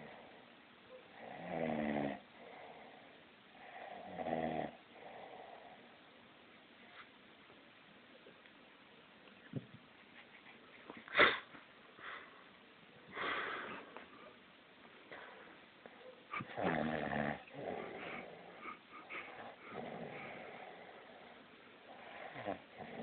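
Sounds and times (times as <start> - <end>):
man snoring: 1.2 - 2.2, 16.6 - 18.3.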